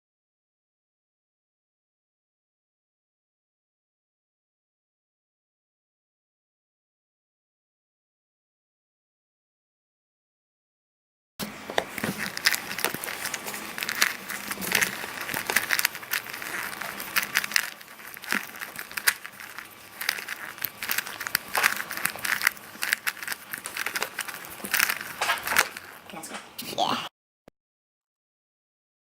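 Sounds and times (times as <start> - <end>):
puzzle cube clicking: 11.8 - 26.1.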